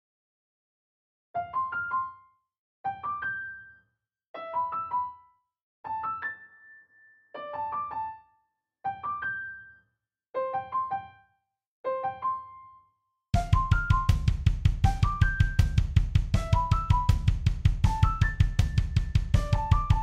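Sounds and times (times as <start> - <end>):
piano notes: 13.4 - 20.0.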